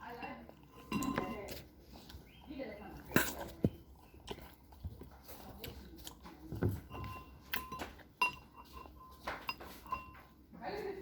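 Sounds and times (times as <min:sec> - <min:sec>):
cutlery and dishes clinking: 0:00.2 - 0:01.6, 0:06.7 - 0:10.4.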